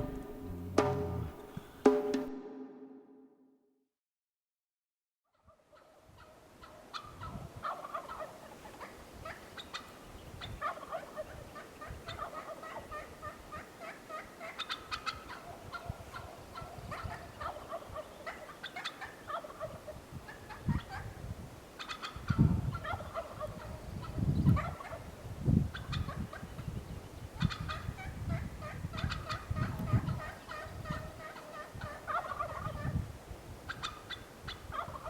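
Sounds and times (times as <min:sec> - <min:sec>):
turkey gobbling: 0:00.0 - 0:02.4, 0:05.7 - 0:21.1, 0:21.8 - 0:25.1, 0:25.7 - 0:26.5, 0:27.4 - 0:33.0, 0:33.7 - 0:35.0
low rumbles: 0:00.0 - 0:02.9.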